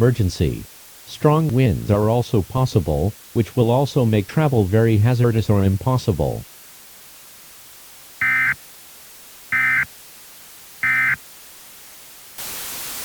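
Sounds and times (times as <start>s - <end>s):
loud static hiss: 0.0s - 13.0s
alert data tone bursts: 8.2s - 8.6s, 9.5s - 9.9s, 10.8s - 11.2s.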